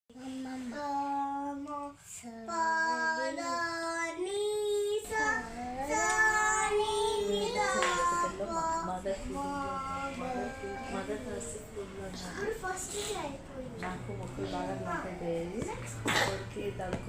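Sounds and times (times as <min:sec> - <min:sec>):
child singing: 0:00.1 - 0:10.9.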